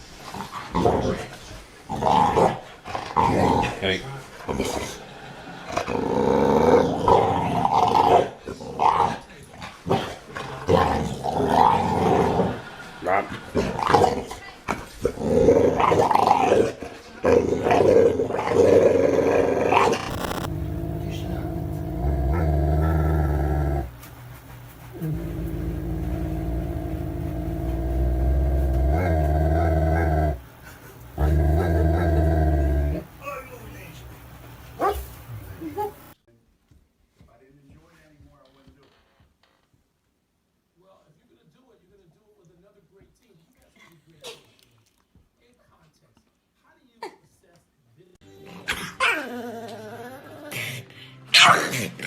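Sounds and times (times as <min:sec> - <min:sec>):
dog growling: 0:00.3 - 0:03.9, 0:05.6 - 0:24.0, 0:24.9 - 0:30.5, 0:31.2 - 0:33.1
dog howling: 0:19.6 - 0:23.9, 0:25.0 - 0:30.4.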